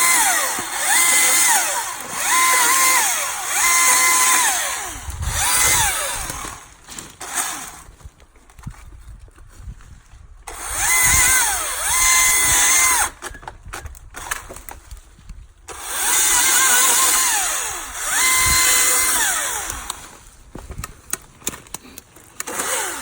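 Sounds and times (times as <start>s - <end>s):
electric chainsaw whining: 0.0s - 7.9s, 10.5s - 14.7s, 15.7s - 20.3s, 22.2s - 23.0s.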